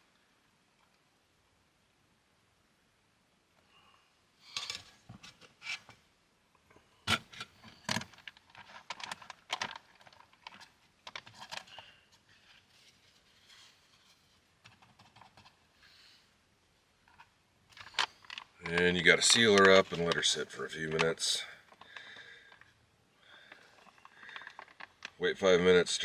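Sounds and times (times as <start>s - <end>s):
food pouch crinkling: 17.8s - 22.6s, 23.4s - 25.2s.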